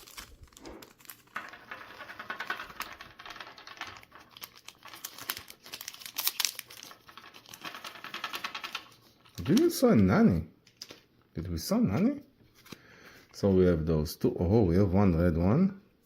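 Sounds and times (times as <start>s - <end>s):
cards clicking and rustling: 0.0s - 9.8s, 10.6s - 11.1s.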